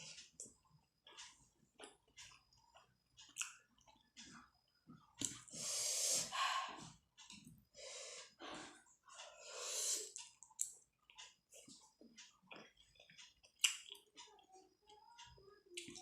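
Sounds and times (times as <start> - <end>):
wet chewing and lip smacks: 0.4 - 4.4, 10.1 - 14.4
loud breathy intake: 5.5 - 6.8.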